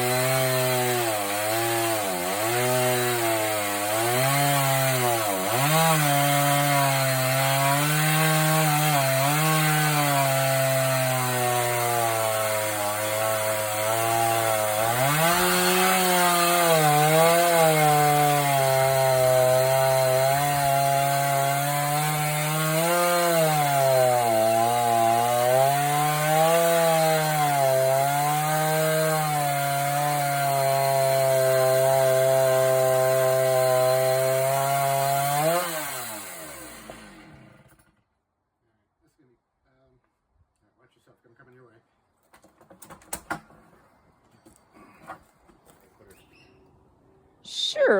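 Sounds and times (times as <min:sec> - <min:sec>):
chainsaw ripping through log: 0:00.0 - 0:38.0.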